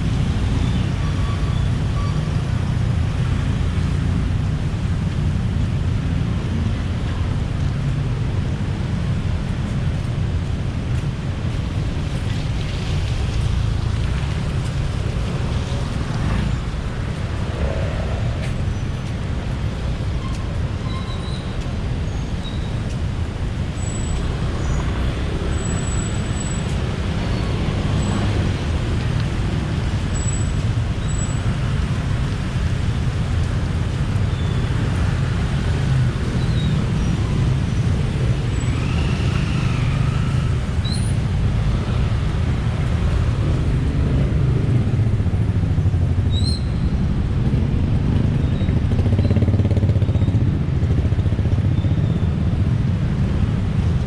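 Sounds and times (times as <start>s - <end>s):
passing cars and motorcycles: 0.0s - 54.0s.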